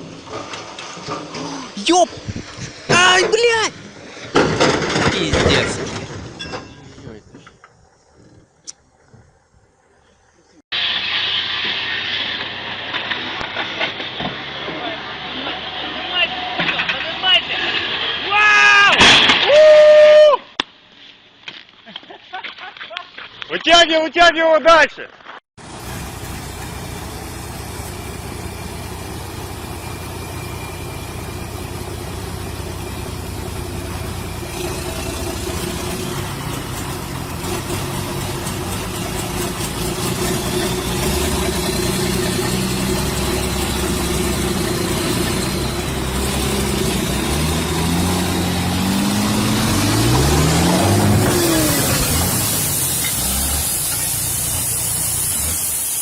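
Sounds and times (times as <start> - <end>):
vehicle engine revving: 25.6 - 55.8.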